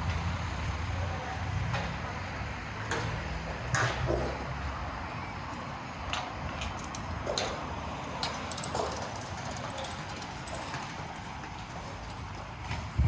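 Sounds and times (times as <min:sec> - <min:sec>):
city street hum: 0:00.0 - 0:13.0.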